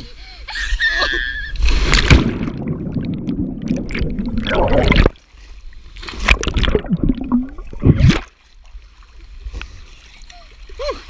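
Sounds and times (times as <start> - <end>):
water churning and sloshing: 1.6 - 11.0
loud splash into water: 1.8 - 5.2.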